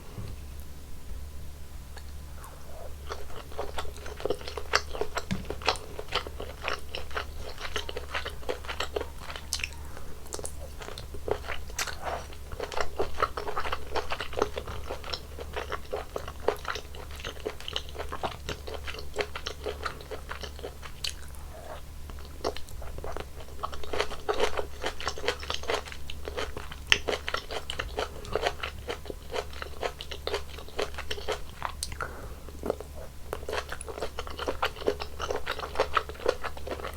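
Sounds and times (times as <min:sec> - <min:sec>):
chewing and crunching food: 0:01.8 - 0:36.9.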